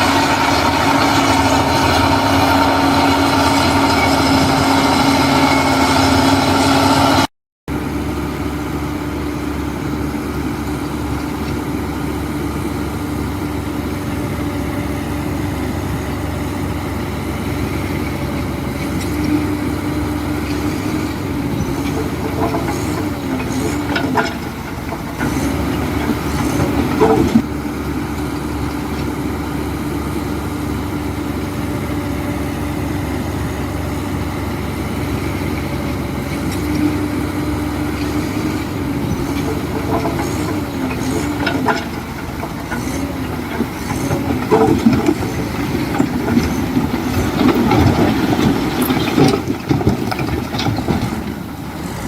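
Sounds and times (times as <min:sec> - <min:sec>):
metallic clanks and squeals: 0:00.0 - 0:06.4, 0:39.0 - 0:52.0
diesel construction machine engine: 0:00.0 - 0:52.0.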